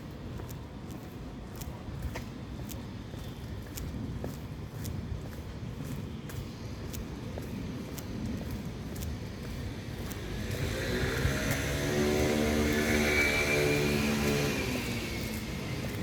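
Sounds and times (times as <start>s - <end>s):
engine passing by: 9.4s - 16.0s.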